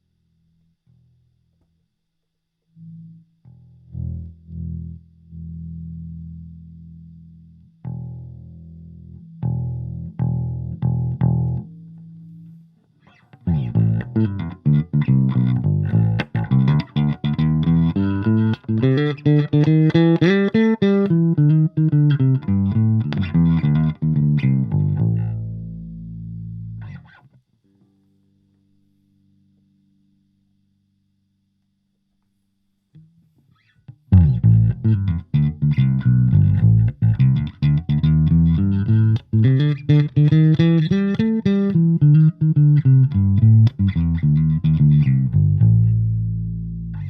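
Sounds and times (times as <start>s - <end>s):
electric bass guitar notes: 2.8s - 12.4s, 13.0s - 27.2s, 34.1s - 47.0s.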